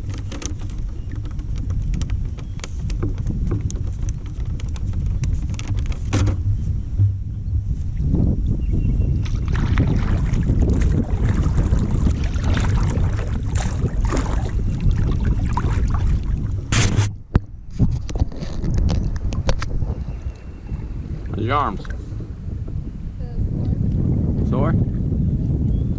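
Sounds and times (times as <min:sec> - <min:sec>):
kayak paddles splashing: 0:00.0 - 0:07.2, 0:09.1 - 0:17.1
wind buffeting microphone: 0:00.0 - 0:25.9
sharp knock: 0:16.7 - 0:17.2.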